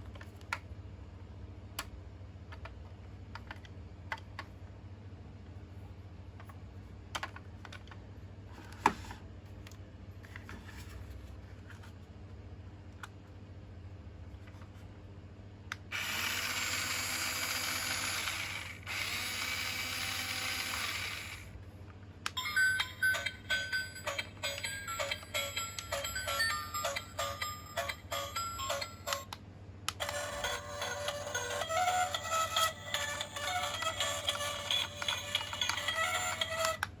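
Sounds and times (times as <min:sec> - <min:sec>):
toy truck motor whirring: 0:15.9 - 0:21.5
toy electronic beeping tune: 0:22.4 - 0:29.3, 0:30.0 - 0:36.8.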